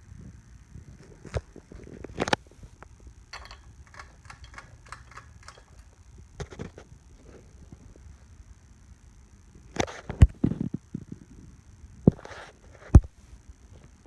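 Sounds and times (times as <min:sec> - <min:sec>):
ceiling fan humming: 0:00.0 - 0:14.0
sharp clicks and knocks: 0:03.3 - 0:06.7.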